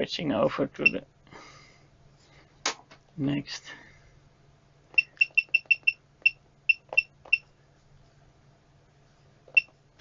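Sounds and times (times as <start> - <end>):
short high beeps: 5.0 - 7.4.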